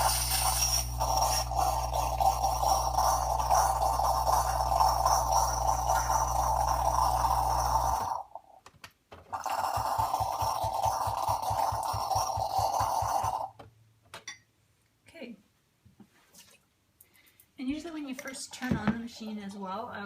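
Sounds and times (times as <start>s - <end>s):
pump pulsing: 0.0s - 8.2s, 9.3s - 13.5s
espresso machine pump humming: 0.0s - 8.4s, 9.3s - 13.5s.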